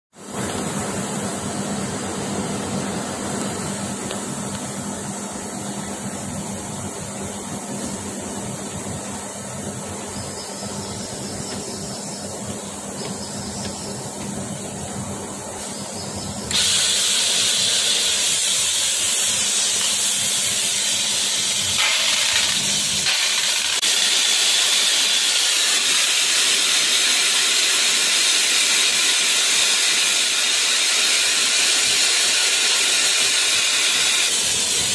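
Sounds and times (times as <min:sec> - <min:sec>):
spray gun hissing: 0:16.4 - 0:34.9.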